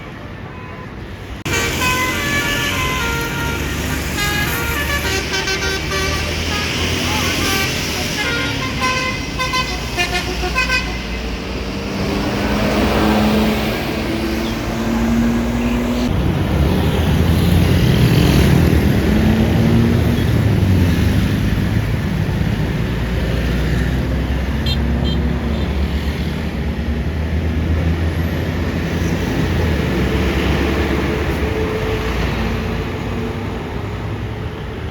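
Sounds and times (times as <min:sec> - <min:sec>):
bus engine rumble: 0:00.0 - 0:25.8, 0:26.4 - 0:34.9
road traffic noise: 0:00.0 - 0:34.9
held horn tone: 0:00.5 - 0:11.3.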